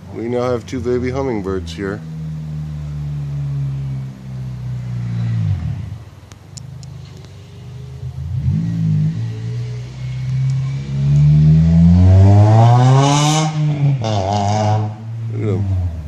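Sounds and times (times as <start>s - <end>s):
vehicle engine accelerating: 0.0s - 16.0s.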